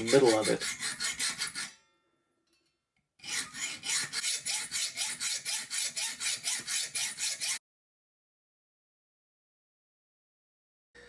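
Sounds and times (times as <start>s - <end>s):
hacksaw rasping strokes: 0.0s - 1.7s, 3.2s - 7.6s.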